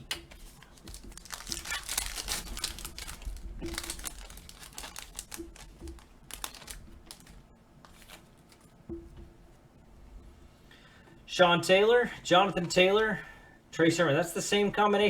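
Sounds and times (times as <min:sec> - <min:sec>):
foil wrapper tearing and crinkling: 0:00.0 - 0:08.6.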